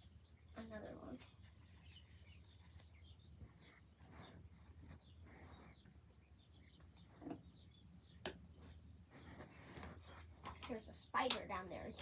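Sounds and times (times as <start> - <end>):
faint rustles: 0.0 - 7.6, 8.5 - 10.9.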